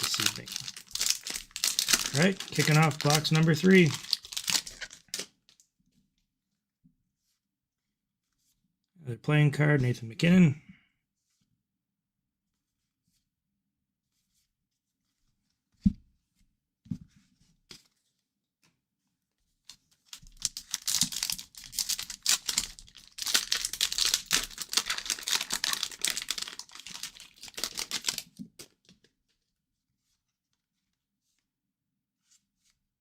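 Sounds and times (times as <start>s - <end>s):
wrapper tearing and crinkling: 0.0s - 5.6s, 20.2s - 28.4s.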